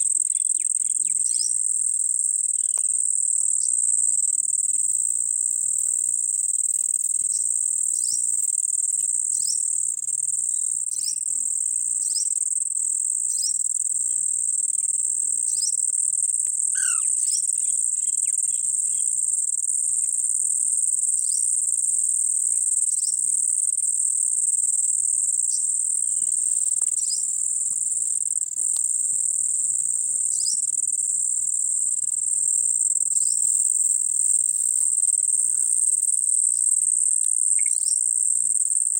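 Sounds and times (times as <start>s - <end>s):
high-pitched insect drone: 12.0s - 38.9s
rising bird call: 16.8s - 17.2s.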